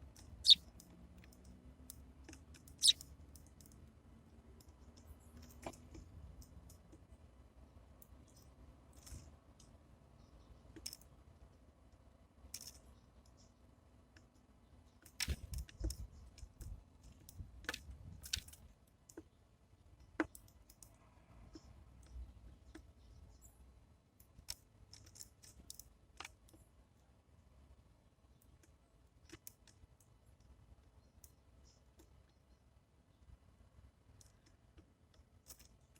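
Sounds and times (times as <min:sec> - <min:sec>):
beaks pecking at seed: 0:00.0 - 0:01.4, 0:02.3 - 0:03.6.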